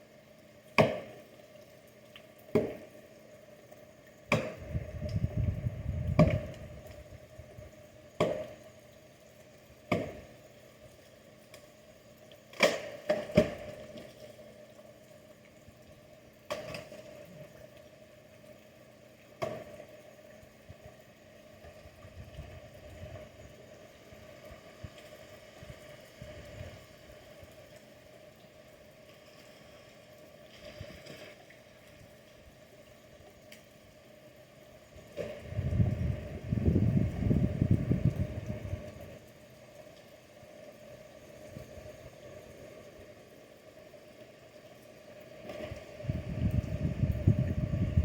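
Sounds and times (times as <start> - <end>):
axe chopping wood: 0.8 - 1.1, 4.3 - 4.6, 9.9 - 10.2.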